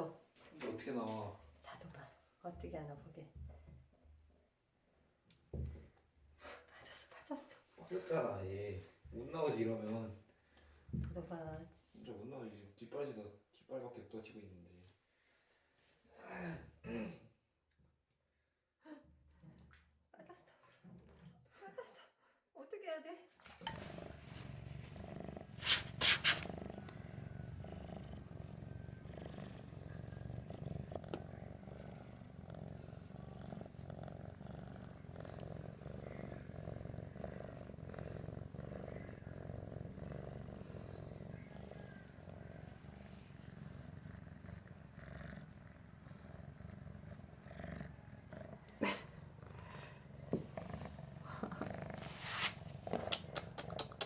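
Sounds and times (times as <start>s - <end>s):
cat purring: 23.5s - 54.0s.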